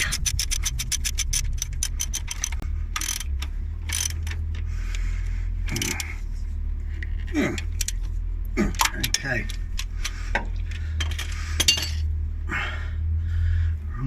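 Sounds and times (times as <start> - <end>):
ratchet spanner clicking rapidly: 0.0 - 4.6
low hum: 0.0 - 14.0.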